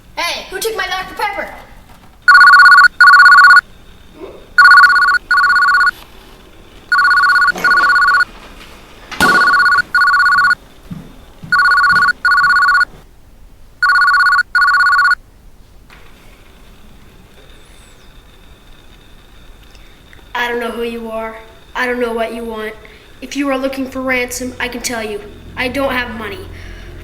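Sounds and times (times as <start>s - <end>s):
telephone ringing: 2.3s - 3.6s, 4.6s - 6.0s, 6.9s - 8.3s, 9.2s - 10.6s, 11.5s - 12.9s, 13.8s - 15.2s.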